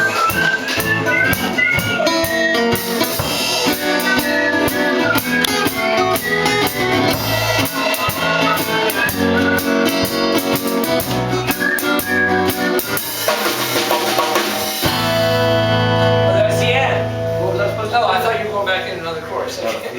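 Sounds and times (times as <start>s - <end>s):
drum kit kick and snare: 0.0s - 16.1s
live band playing: 0.0s - 19.9s.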